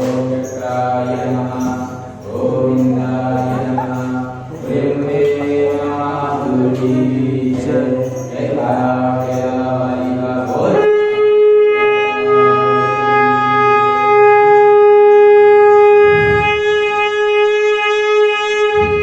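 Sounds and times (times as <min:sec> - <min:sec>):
conch shell blown: 0:10.6 - 0:19.0.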